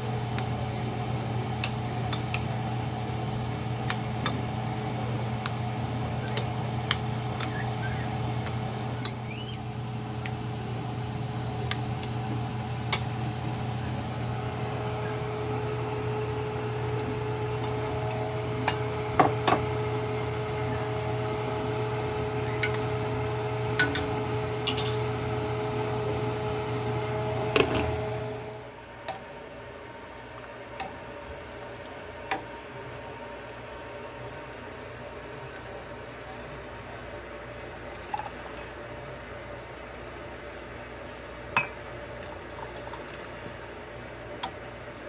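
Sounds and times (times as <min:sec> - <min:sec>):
higher hum: 0:00.0 - 0:28.6
kitchen appliance humming: 0:00.0 - 0:45.0
glass and utensils clinking: 0:23.8 - 0:25.1.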